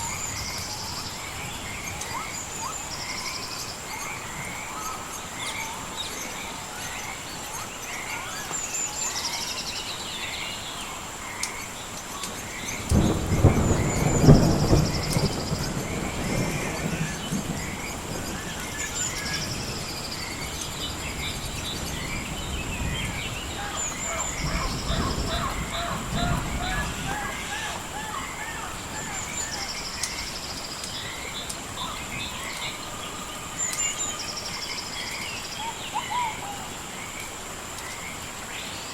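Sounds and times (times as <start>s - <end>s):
birds chirping and trilling: 0.0s - 38.9s
thunder rumbling: 12.4s - 32.6s.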